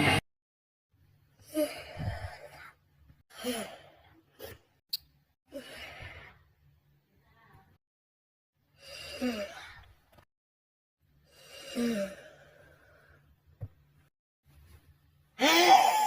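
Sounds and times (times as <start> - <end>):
person yawning: 15.4 - 16.0.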